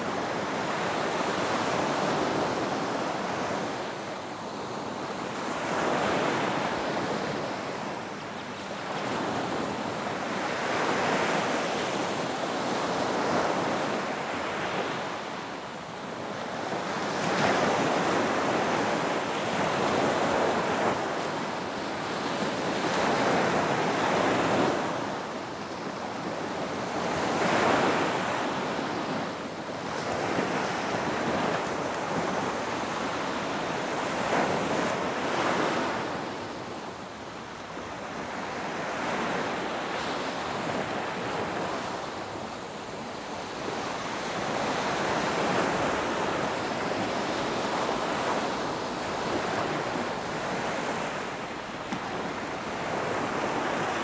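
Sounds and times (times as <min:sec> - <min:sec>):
surf washing onto a beach: 0:00.0 - 0:54.0.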